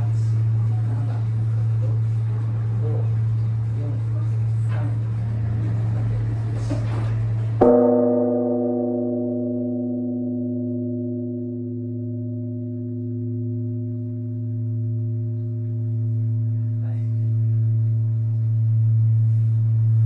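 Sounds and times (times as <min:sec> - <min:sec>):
temple bell ringing: 0:04.5 - 0:18.4.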